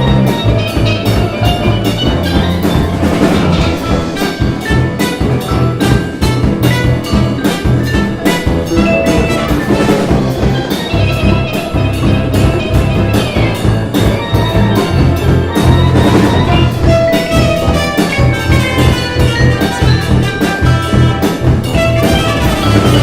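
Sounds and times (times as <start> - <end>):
bass line: 0.0 - 23.0
drum kit and percussion: 0.0 - 23.0
steel pan: 0.0 - 23.0.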